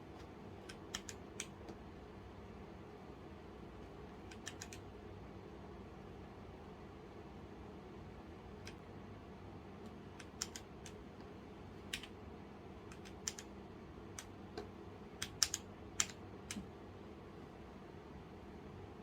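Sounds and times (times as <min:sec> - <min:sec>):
faint low hum: 0:00.0 - 0:19.0
mechanical keyboard key clicks: 0:04.3 - 0:04.8, 0:10.2 - 0:11.0, 0:12.9 - 0:13.5, 0:15.2 - 0:16.6.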